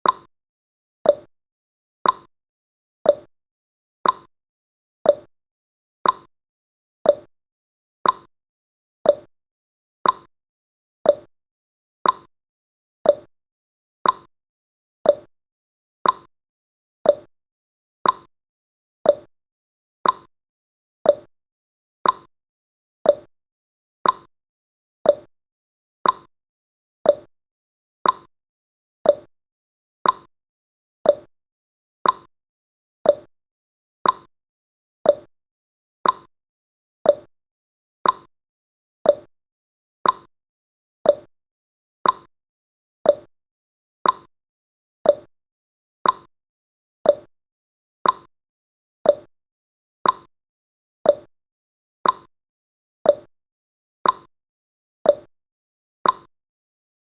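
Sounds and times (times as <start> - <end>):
clock ticking: 36.0 - 36.3, 40.0 - 40.3, 42.0 - 42.3, 46.0 - 46.3, 48.0 - 48.3, 56.0 - 56.3.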